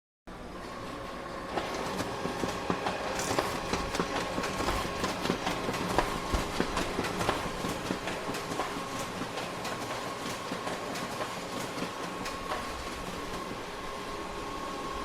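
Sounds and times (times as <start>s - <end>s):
photocopier humming: 0.4s - 15.0s
photocopier clicks and clacks: 1.5s - 13.6s.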